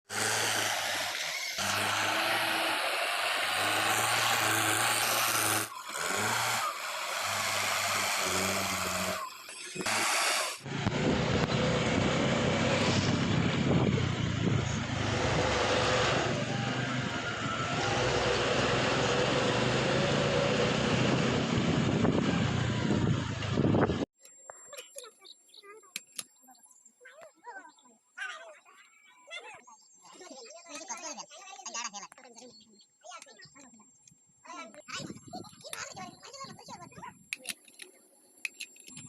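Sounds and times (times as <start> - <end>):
diesel engine running: 0.1 - 24.0.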